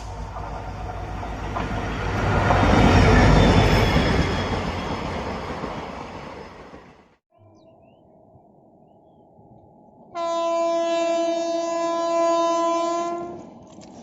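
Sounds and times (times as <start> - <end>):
train passing: 0.0 - 7.2.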